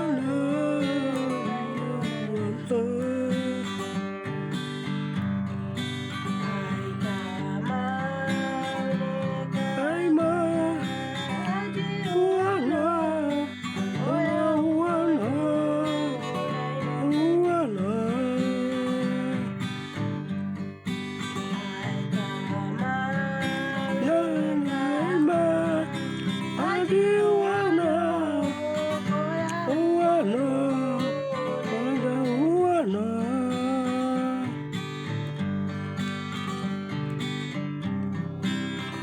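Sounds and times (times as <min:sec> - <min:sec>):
person singing: 0:00.0 - 0:04.0, 0:06.4 - 0:19.8, 0:21.2 - 0:34.6
strummed acoustic guitar: 0:00.0 - 0:39.0.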